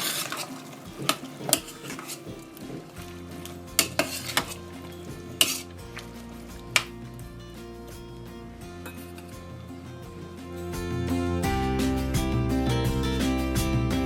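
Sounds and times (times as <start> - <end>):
spoon stirring in a pot: 0.0 - 7.0
food sizzling: 0.0 - 12.2.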